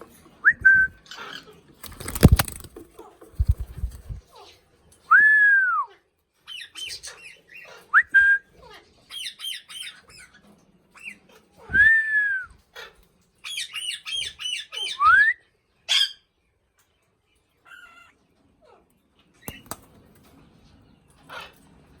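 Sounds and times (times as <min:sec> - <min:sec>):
sharp clicks: 0:01.8 - 0:02.8, 0:19.5 - 0:19.9.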